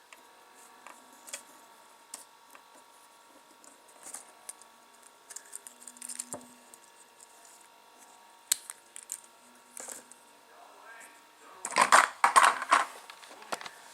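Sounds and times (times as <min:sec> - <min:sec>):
plastic bricks clicking and rattling: 0:11.6 - 0:13.7.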